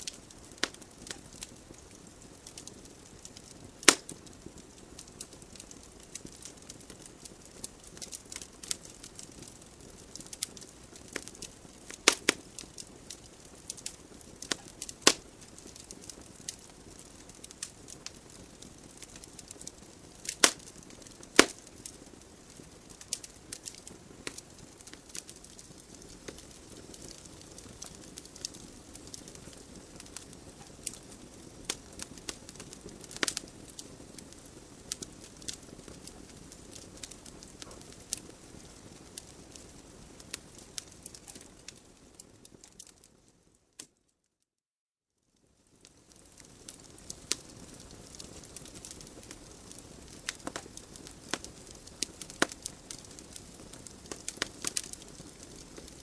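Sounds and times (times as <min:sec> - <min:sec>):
wood fire crackling: 0:00.0 - 0:44.0, 0:45.4 - 0:56.0
logs popping and snapping: 0:21.4 - 0:21.6.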